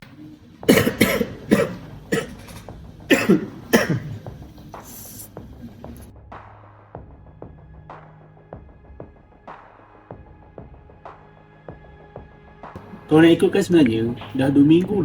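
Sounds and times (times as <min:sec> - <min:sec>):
person coughing phlegmy: 0:00.6 - 0:05.3.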